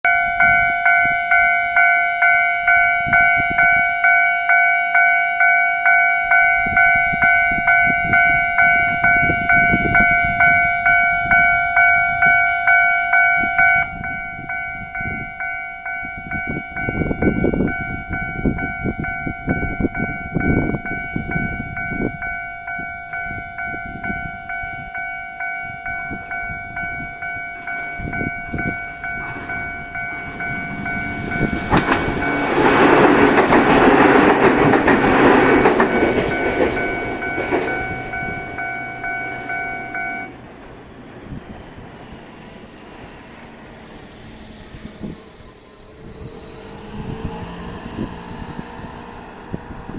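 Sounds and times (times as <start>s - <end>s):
level-crossing warning bell ringing: 0.0s - 49.9s
electric train passing: 0.1s - 49.9s
wheel and track rumble: 25.6s - 49.9s.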